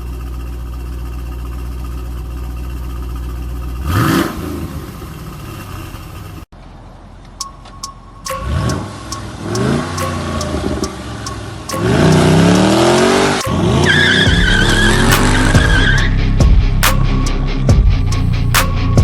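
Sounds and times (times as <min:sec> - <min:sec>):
car engine starting and revving: 0:03.1 - 0:06.8, 0:08.4 - 0:16.4
music with throbbing beat: 0:07.4 - 0:19.0.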